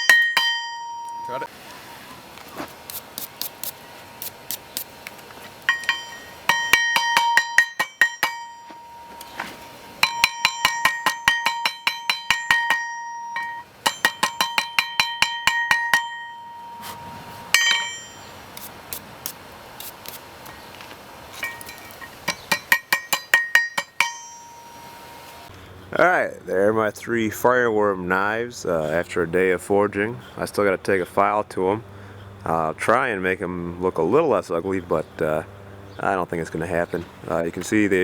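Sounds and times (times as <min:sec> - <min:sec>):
hammer blows on steel: 0:05.7 - 0:20.0, 0:21.4 - 0:25.4.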